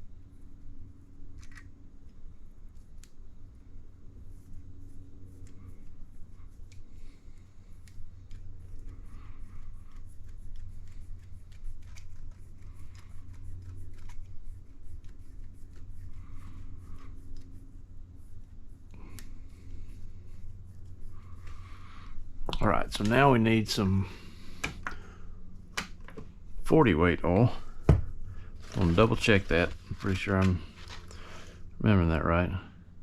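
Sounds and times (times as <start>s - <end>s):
steady low hum: 0.0s - 33.0s
small plastic parts clicking and rattling: 1.3s - 1.8s.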